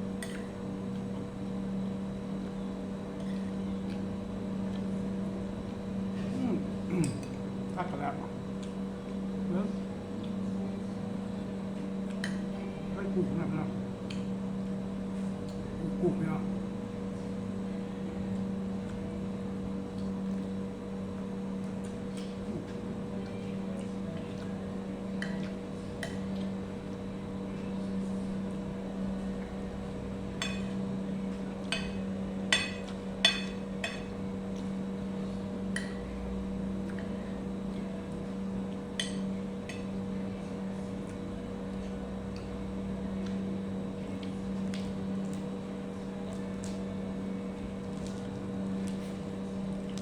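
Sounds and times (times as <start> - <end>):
low mechanical hum: 0.0 - 50.0.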